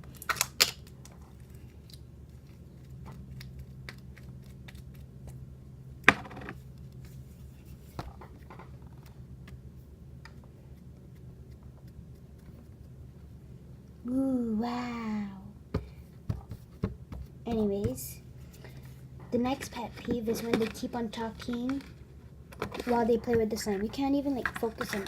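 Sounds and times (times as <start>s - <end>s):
slime squishing with sticky pops: 1.8s - 5.4s.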